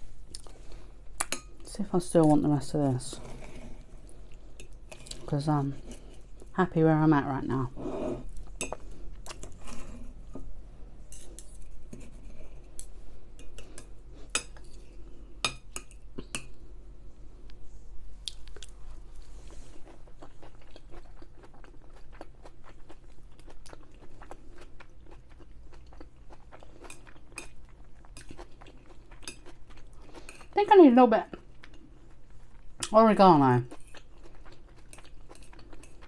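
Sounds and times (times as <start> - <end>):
chewing: 0.3 - 1.4, 8.2 - 10.2, 18.2 - 30.6, 31.3 - 32.9, 33.7 - 36.0
fork scraping a plate: 3.1 - 3.9, 7.7 - 8.8, 9.4 - 10.2, 11.1 - 12.7.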